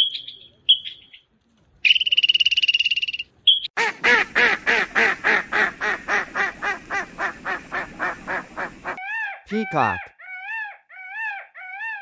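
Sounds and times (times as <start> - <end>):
bird making harsh quacking calls: 3.8 - 10.5.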